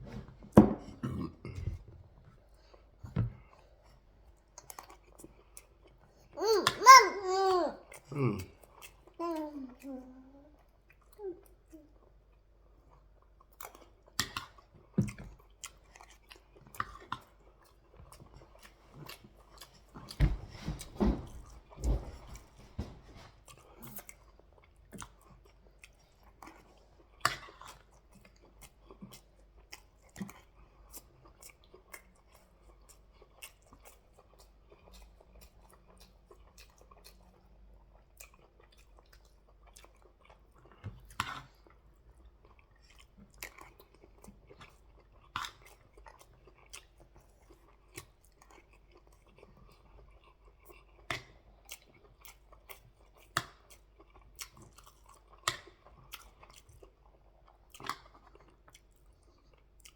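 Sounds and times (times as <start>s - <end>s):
chewing and biting: 12.3s - 59.9s.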